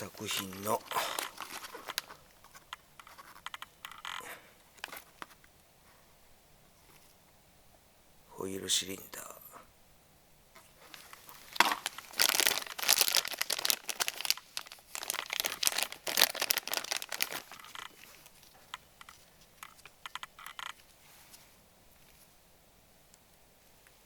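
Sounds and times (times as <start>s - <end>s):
packaging crinkling and tearing: 0.0s - 2.3s, 10.9s - 18.8s.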